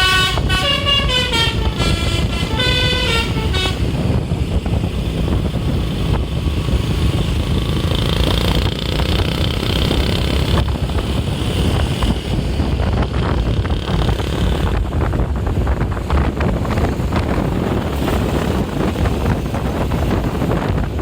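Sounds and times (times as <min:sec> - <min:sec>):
diesel bus engine rumbling: 0:00.0 - 0:21.0
wind buffeting microphone: 0:00.0 - 0:21.0.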